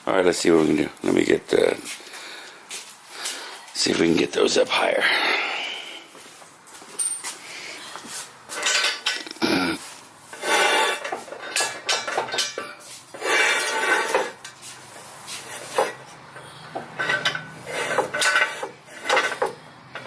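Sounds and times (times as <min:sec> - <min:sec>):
metallic clanking and scraping: 0:08.0 - 0:20.0.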